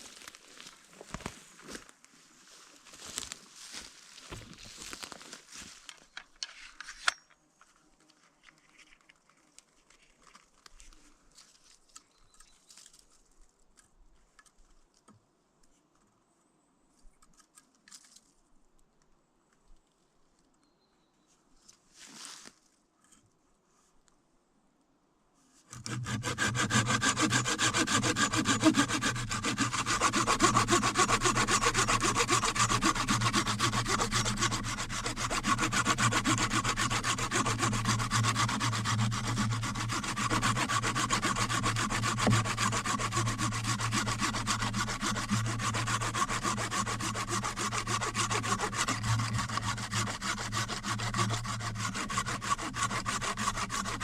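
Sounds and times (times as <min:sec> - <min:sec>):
hand tool scraping wood: 0:25.7 - 0:54.0.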